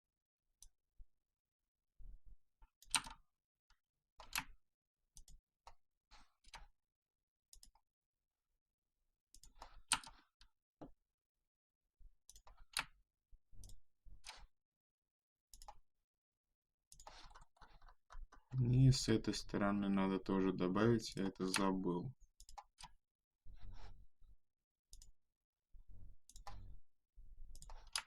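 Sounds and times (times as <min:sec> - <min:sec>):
computer mouse clicking: 0:02.8 - 0:03.2, 0:07.5 - 0:07.8, 0:09.4 - 0:10.2, 0:15.5 - 0:15.8, 0:24.9 - 0:25.1, 0:26.3 - 0:26.7, 0:27.5 - 0:28.0.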